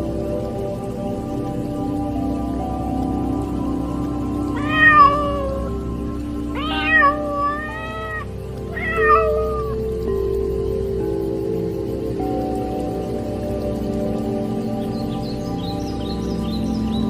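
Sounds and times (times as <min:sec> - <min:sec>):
soft ambient music: 0:00.0 - 0:17.0
cat meowing: 0:04.6 - 0:05.7, 0:06.6 - 0:09.8.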